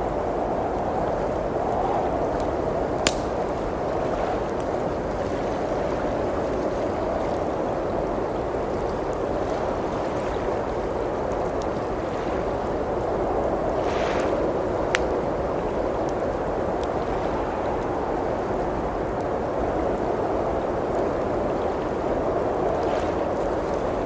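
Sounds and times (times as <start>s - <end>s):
wood fire crackling: 0.0s - 5.1s, 10.9s - 18.1s, 18.8s - 24.0s
blizzard wind blowing: 0.0s - 24.0s
fire pop: 3.0s - 3.6s.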